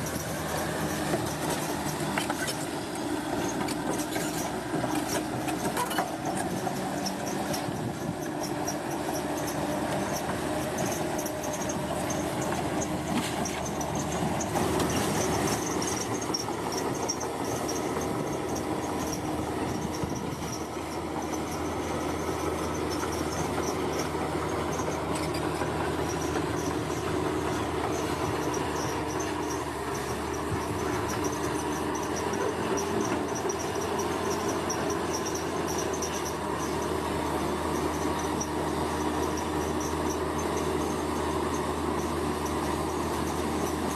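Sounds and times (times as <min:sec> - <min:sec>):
bulldozer diesel engine: 0:00.0 - 0:43.9
insects trilling: 0:21.4 - 0:36.9.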